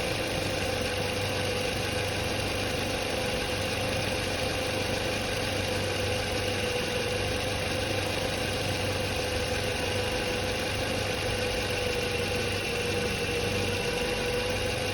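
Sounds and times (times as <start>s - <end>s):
alternator whine: 3.8s - 14.9s.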